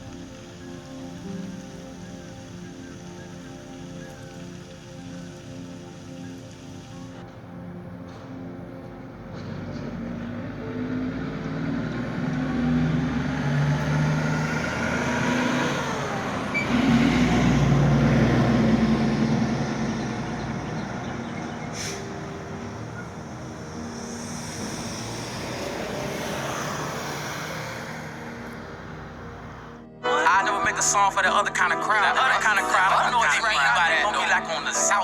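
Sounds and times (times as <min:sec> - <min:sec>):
vehicle engine passing by: 0:09.2 - 0:30.0.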